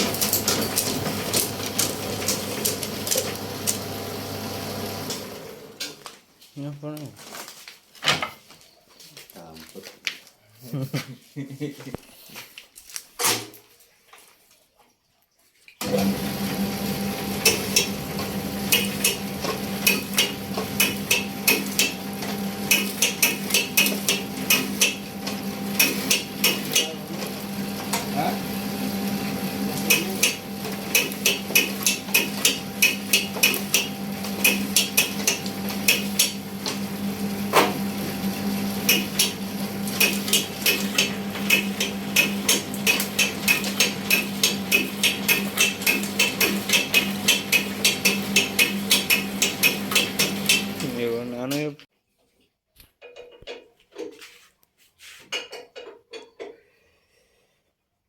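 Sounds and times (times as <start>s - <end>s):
machine motor hum: 15.8s - 51.1s.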